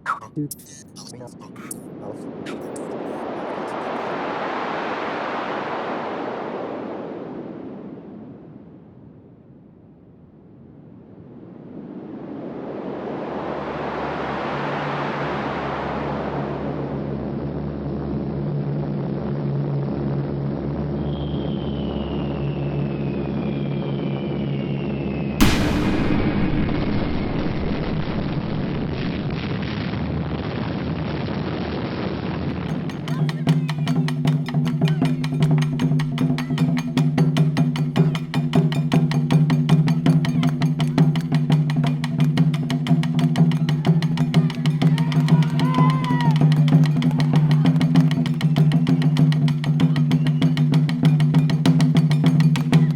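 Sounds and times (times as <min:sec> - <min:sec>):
aircraft engines droning: 0:01.4 - 0:07.8
steady low drone: 0:25.4 - 0:29.6.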